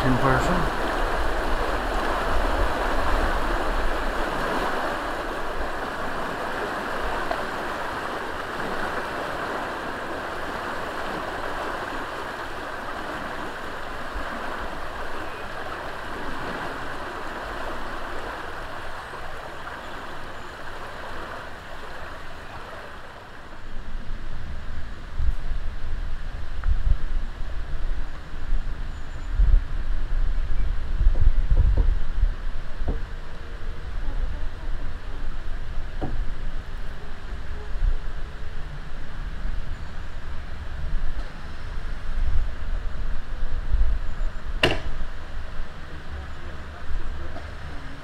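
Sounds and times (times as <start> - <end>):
water rushing through sluices: 0.0 - 23.8.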